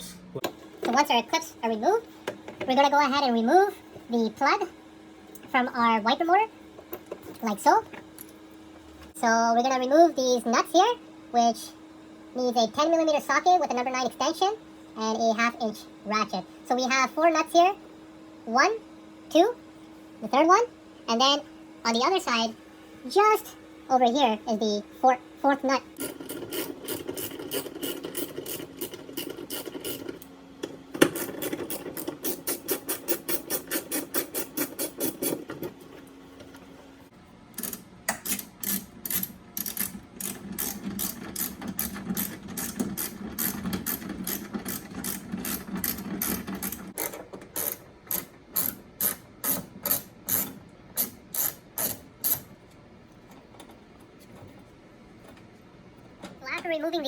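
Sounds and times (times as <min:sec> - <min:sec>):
ratchet wrench clicking: 0:37.6 - 0:52.4.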